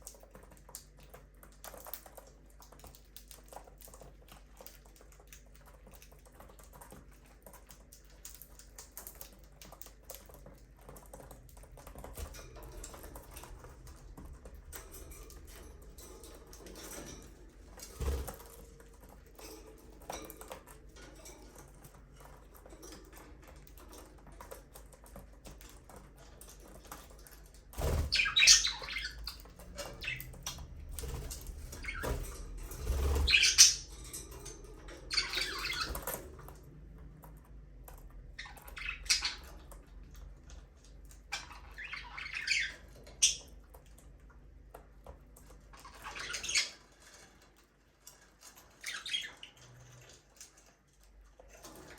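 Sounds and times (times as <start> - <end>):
budgerigars chirping and squawking: 27.8 - 36.4, 38.3 - 39.8, 40.5 - 43.6, 45.6 - 47.4, 48.3 - 50.6.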